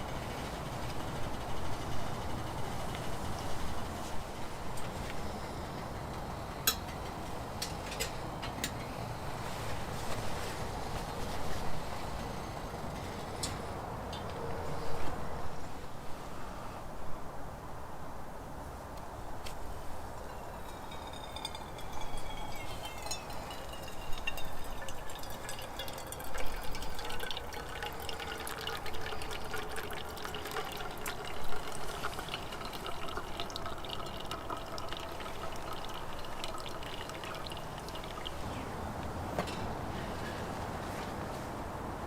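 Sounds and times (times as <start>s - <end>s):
gliding ringing tone: 20.2s - 26.2s
water drips: 20.2s - 38.5s
liquid pouring into container: 20.5s - 38.4s.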